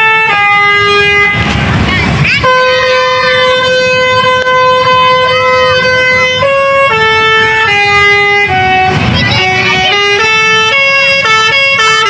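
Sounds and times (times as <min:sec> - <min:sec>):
bus horn playing a melody: 0:00.0 - 0:01.6, 0:02.3 - 0:12.0.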